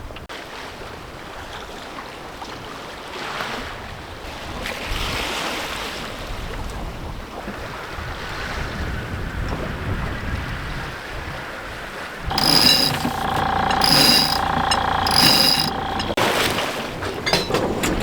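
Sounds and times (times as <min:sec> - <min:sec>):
high ratcheting sound: 0:12.3 - 0:16.2
mechanism whining: 0:12.3 - 0:16.2
wind: 0:12.3 - 0:18.0.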